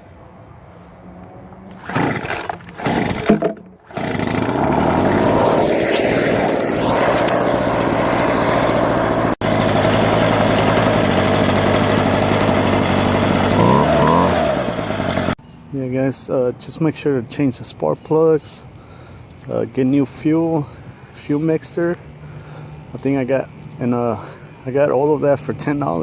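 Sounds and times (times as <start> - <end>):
leaf blower engine starting: 1.7 - 15.4.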